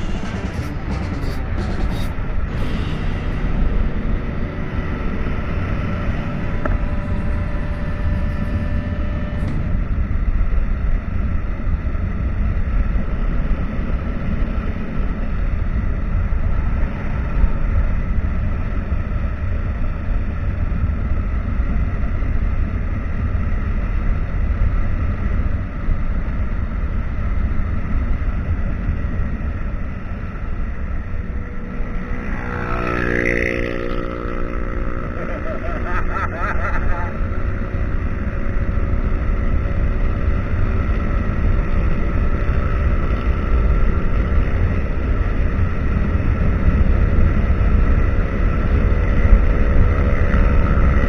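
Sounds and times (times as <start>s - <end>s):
motorcycle engine rumble: 0.0s - 51.0s.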